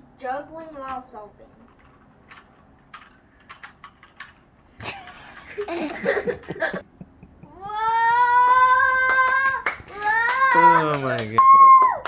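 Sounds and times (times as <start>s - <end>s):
child's voice: 0.2s - 1.6s
long high vocal cry: 7.4s - 10.8s.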